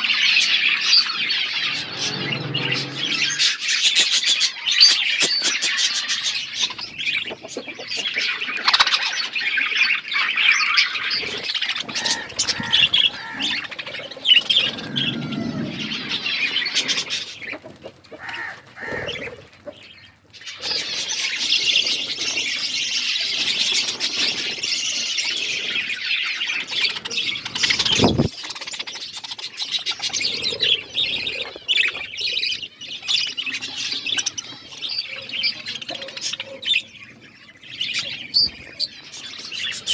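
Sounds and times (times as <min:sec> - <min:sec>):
budgerigars chattering: 0:00.1 - 0:39.9.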